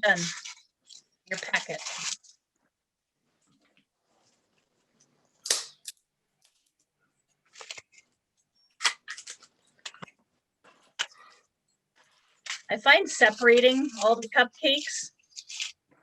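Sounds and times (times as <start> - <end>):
paper crackling and snapping: 0.2 - 2.4, 7.4 - 8.2, 8.8 - 10.1.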